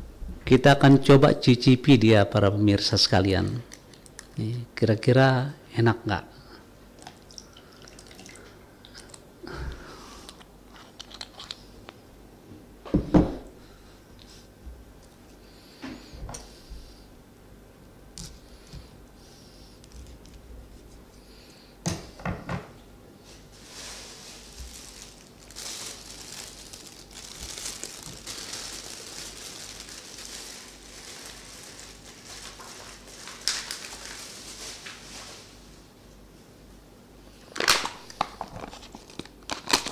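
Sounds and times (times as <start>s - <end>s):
rustling handling noise: 23.2s - 35.9s.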